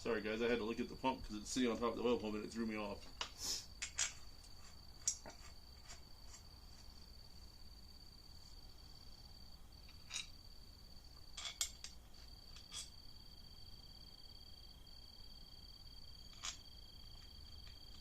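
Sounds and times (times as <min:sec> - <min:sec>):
cricket chirring: 0:00.0 - 0:18.0
metal bolts clinking: 0:11.3 - 0:13.0.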